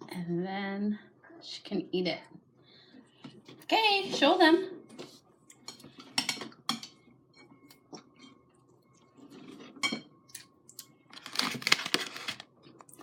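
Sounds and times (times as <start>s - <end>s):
plastic packets crinkling: 11.1s - 13.0s.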